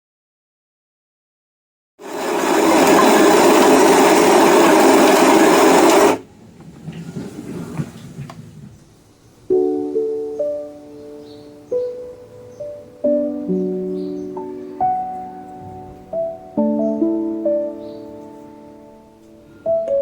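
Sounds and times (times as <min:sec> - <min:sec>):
espresso machine hissing: 0:02.0 - 0:06.2
soft piano music: 0:09.2 - 0:20.0.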